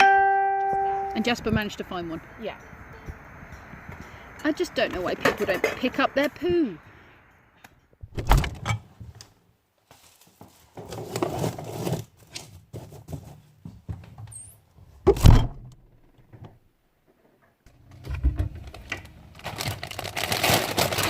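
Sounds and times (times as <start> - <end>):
rustling and clattering: 8.2 - 21.0.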